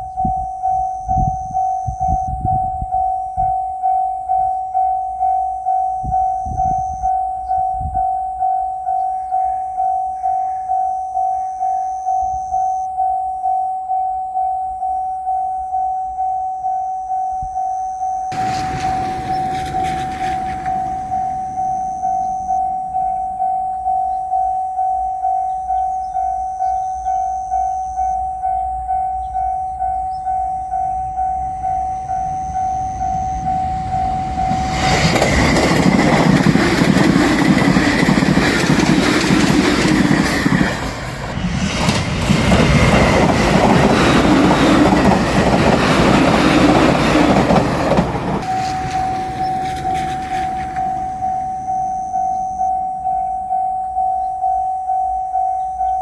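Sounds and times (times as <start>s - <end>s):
electric train rushing past: 18.3s - 23.5s, 30.1s - 52.7s
level-crossing bell ringing: 18.3s - 23.8s, 29.0s - 41.7s, 43.0s - 56.0s.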